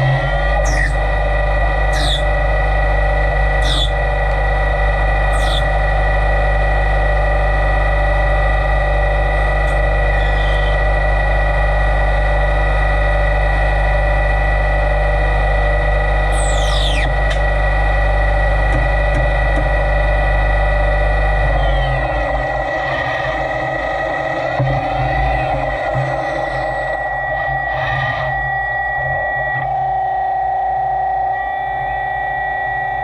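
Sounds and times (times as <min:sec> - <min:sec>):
high squeals falling in pitch: 0:00.0 - 0:02.7, 0:03.4 - 0:04.1, 0:05.2 - 0:05.9, 0:09.7 - 0:10.9, 0:16.3 - 0:17.5
lathe humming and whining: 0:00.0 - 0:33.0.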